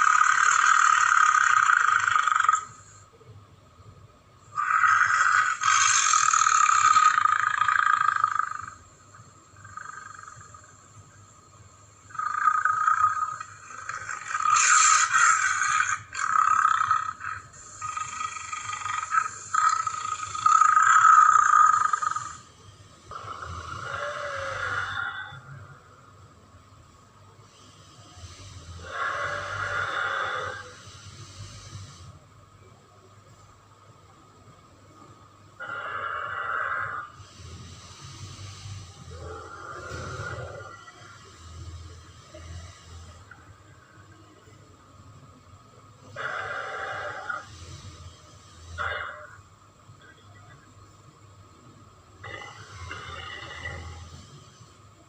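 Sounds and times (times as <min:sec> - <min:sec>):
dinosaur calls: 0:00.0 - 0:03.0, 0:04.5 - 0:11.0, 0:11.9 - 0:26.0, 0:28.2 - 0:32.0, 0:35.6 - 0:44.3, 0:46.0 - 0:49.5, 0:52.2 - 0:54.6
creature breathy hissing exhale: 0:27.6 - 0:32.2, 0:35.6 - 0:43.4.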